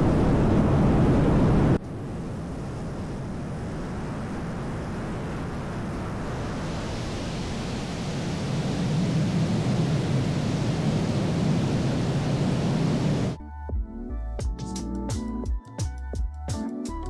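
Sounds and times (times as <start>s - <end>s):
jet engine and airflow rush: 0.0s - 13.4s.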